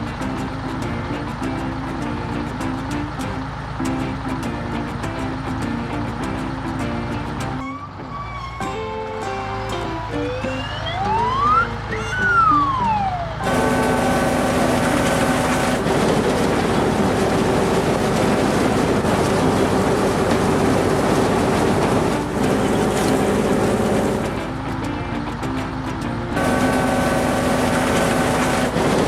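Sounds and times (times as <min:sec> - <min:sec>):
cartoon siren: 0:07.6 - 0:09.0, 0:09.8 - 0:15.4
background music: 0:08.6 - 0:15.4
loud steady rushing noise: 0:10.2 - 0:29.0.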